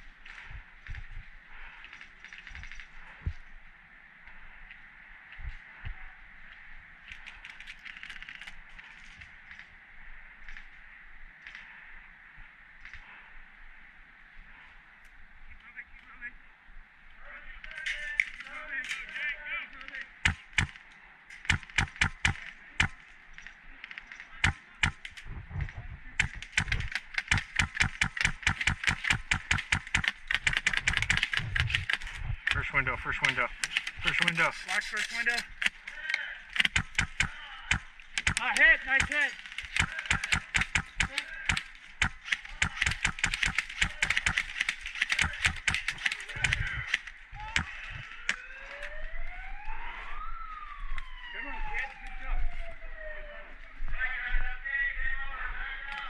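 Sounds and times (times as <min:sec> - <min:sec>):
airsoft gun shots: 0:20.2 - 0:20.8, 0:21.4 - 0:23.0, 0:24.4 - 0:25.0, 0:26.2 - 0:32.0, 0:36.6 - 0:48.0
rapid sharp clicks and taps: 0:21.5 - 0:23.0, 0:26.2 - 0:32.6, 0:36.6 - 0:47.8
siren rising in pitch: 0:47.8 - 0:53.9.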